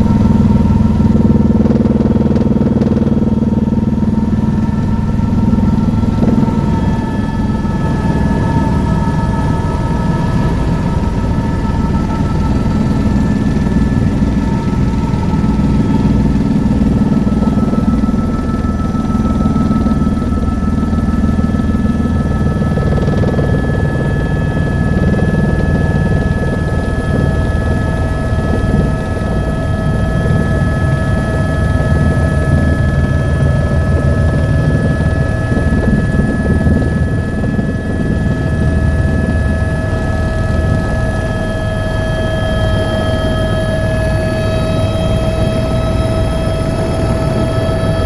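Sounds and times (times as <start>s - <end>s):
helicopter engine and rotor rumble: 0.0s - 48.0s
high turbine whine: 0.0s - 48.0s.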